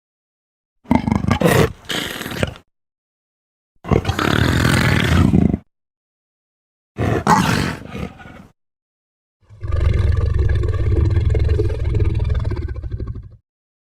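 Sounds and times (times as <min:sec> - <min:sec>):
long deep rumbling roar: 0:09.5 - 0:13.4.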